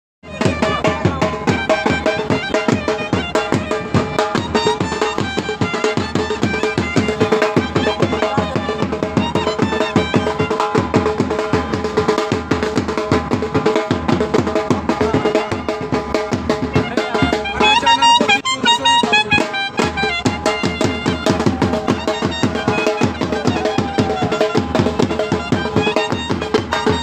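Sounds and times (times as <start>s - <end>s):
fast drum rhythm: 0.2s - 27.0s
instrumental melody line: 0.2s - 27.0s.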